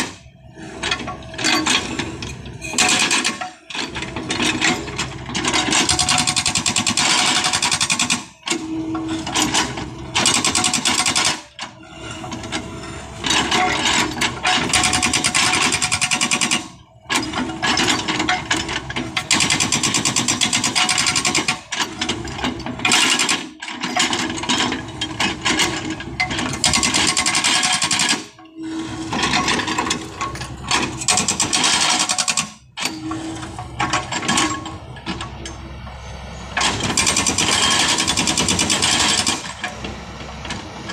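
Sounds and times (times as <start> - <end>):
hydraulic breaker hammering rock: 0.0 - 35.9, 36.5 - 40.9
machine engine running: 28.6 - 40.9.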